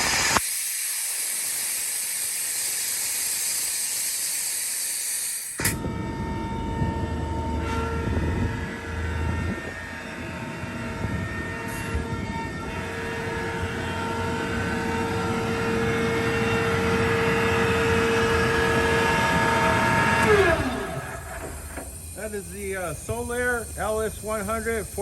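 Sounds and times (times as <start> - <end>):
air compressor running: 0.0 - 5.8, 12.6 - 25.0.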